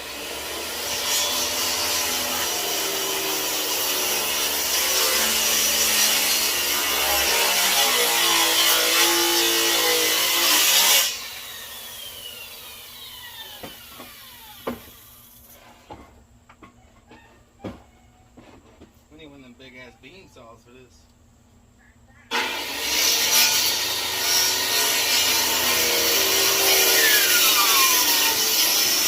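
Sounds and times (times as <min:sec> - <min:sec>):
circular saw cutting wood: 0:00.0 - 0:15.9, 0:22.3 - 0:29.0.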